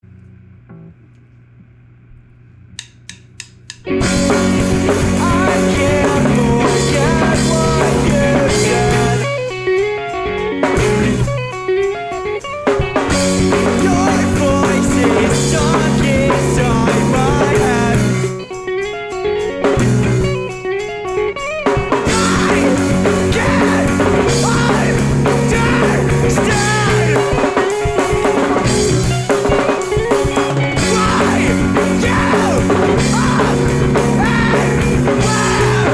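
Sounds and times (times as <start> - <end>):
quick clicks: 2.8 - 3.9
rock band playing: 3.8 - 35.9.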